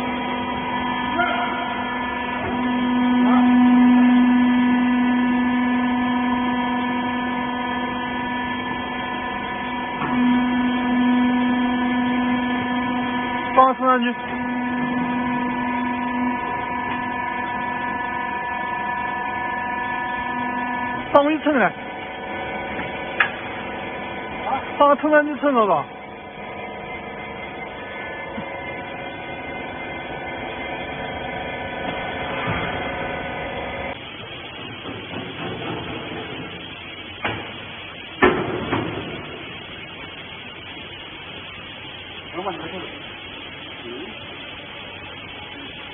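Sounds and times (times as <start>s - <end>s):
electric motor humming: 0.0s - 34.2s.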